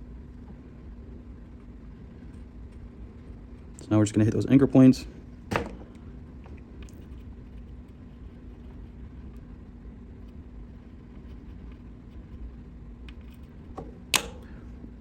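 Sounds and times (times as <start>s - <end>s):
low hum: 0.0s - 15.0s.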